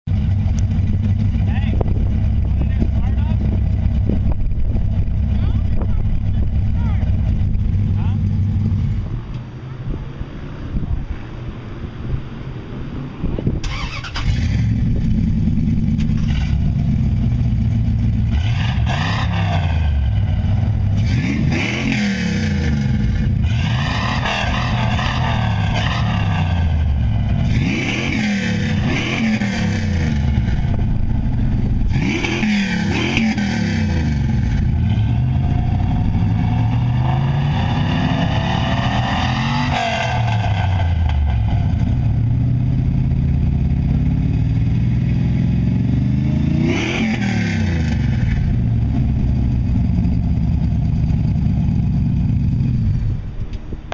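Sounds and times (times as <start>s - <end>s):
engine exhaust revving: 13.4s - 53.3s.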